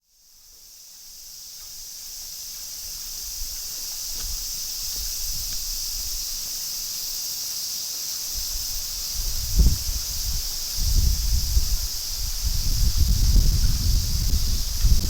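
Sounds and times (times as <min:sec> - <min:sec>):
insect chorus: 0:00.0 - 0:15.0
wind rustling trees: 0:00.0 - 0:15.0
wind buffeting microphone: 0:03.3 - 0:06.4, 0:08.3 - 0:15.0.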